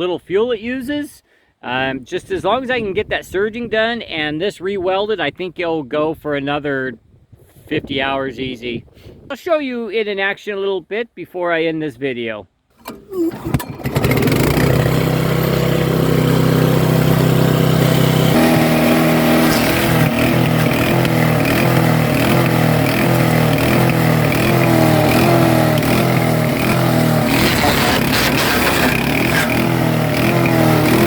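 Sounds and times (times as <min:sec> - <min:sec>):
small engine surging: 0:12.9 - 0:31.0.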